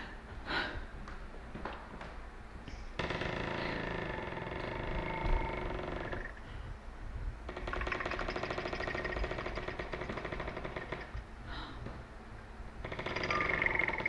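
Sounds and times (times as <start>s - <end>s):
mobile phone buzzing on vibrate: 3.3s - 6.4s.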